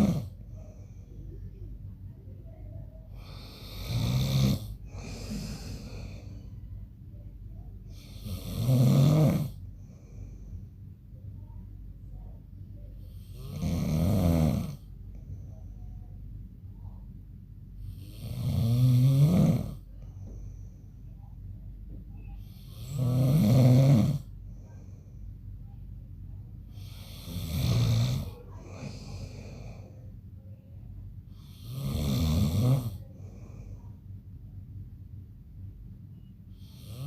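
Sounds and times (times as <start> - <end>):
man snoring: 0.0 - 0.3, 3.2 - 6.3, 7.9 - 9.6, 13.2 - 14.9, 17.9 - 19.8, 22.6 - 24.3, 26.8 - 29.4, 31.4 - 33.1, 36.6 - 37.0.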